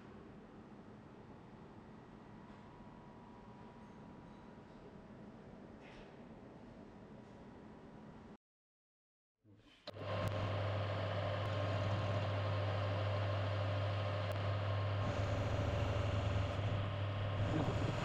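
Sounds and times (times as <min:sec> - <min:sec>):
machine tool humming: 0:09.9 - 0:18.0.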